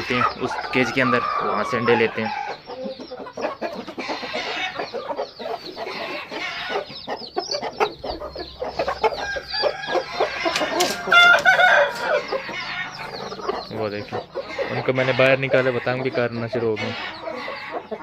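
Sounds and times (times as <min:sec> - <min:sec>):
chickens clucking: 0:00.0 - 0:18.0
rooster crowing: 0:08.4 - 0:13.2.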